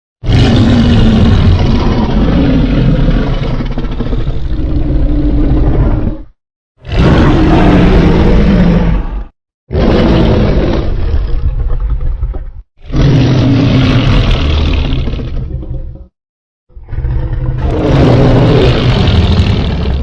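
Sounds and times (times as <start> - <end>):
monster roar sound effect: 0.2 - 6.1, 6.8 - 11.5, 16.8 - 20.0.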